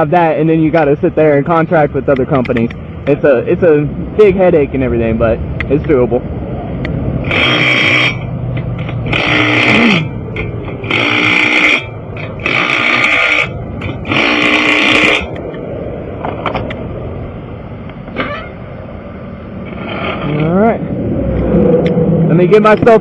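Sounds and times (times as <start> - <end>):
impact wrench bursts: 7.2 - 15.4.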